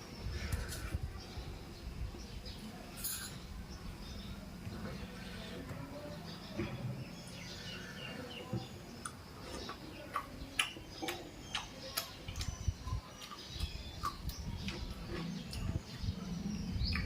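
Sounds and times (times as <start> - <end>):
chewing and lip smacking: 9.0 - 15.8.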